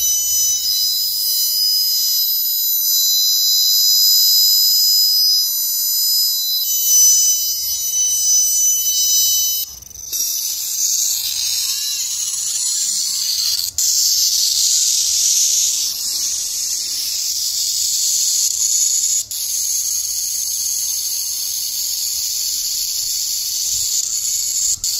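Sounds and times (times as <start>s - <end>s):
high electronic alarm tone: 0.0s - 17.3s
harsh high hissing: 5.4s - 24.9s.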